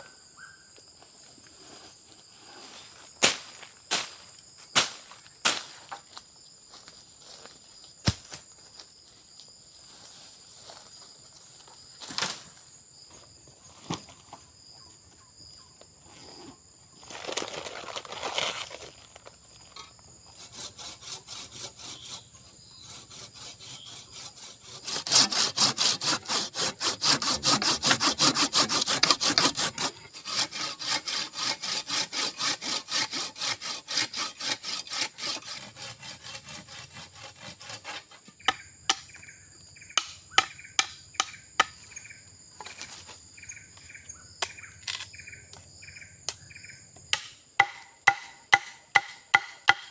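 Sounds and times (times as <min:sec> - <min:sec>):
forest insects buzzing: 0:00.0 - 0:49.9
hand saw cutting wood: 0:20.3 - 0:39.0, 0:47.1 - 0:49.9.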